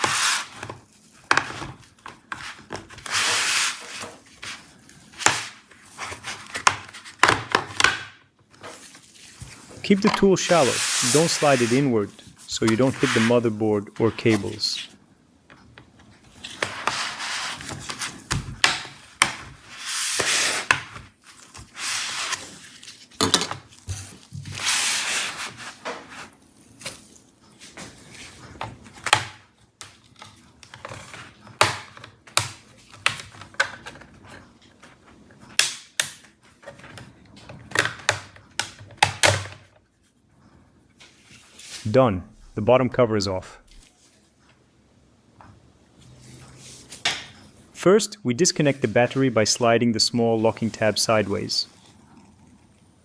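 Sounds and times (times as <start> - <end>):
plastic tool scraping plastic: 0.0 - 7.3, 8.6 - 14.6.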